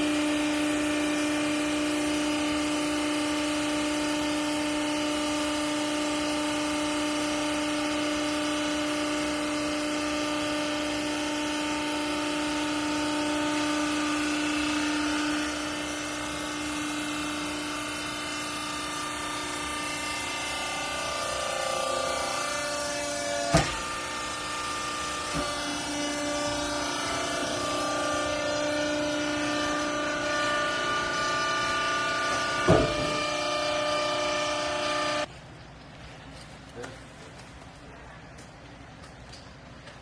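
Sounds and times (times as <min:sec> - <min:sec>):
baler motor humming: 0:00.0 - 0:35.3
sharp knock: 0:32.6 - 0:33.2.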